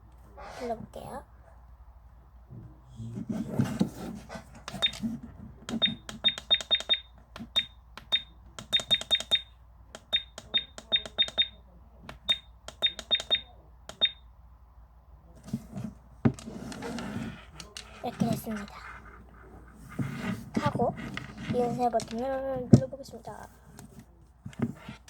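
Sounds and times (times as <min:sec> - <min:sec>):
button clicks with short high beeps: 0:05.8 - 0:14.2.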